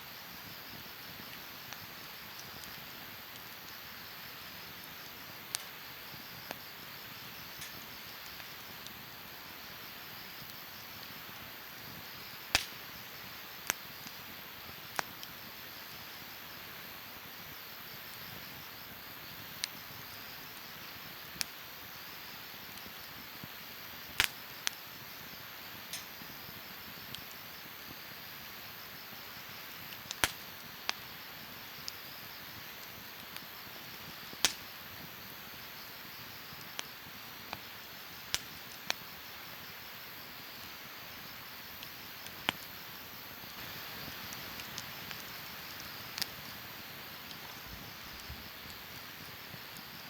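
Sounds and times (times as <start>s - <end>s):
campfire crackling and popping: 0.1s - 50.0s.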